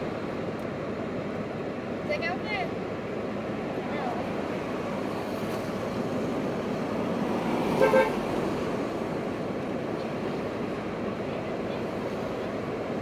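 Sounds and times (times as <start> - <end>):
street traffic noise: 0.0 - 13.0
car horn tooting: 7.8 - 8.2.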